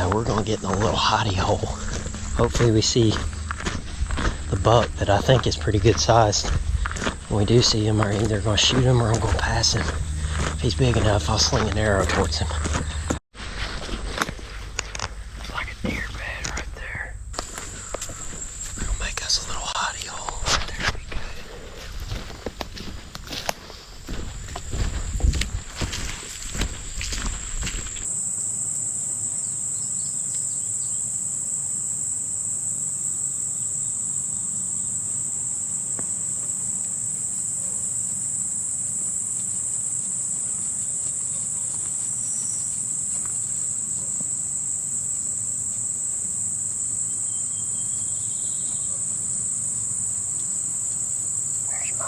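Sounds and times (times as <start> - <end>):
footsteps crunching in brush: 0.0 - 28.1, 38.0 - 44.4
insects buzzing: 0.0 - 52.0.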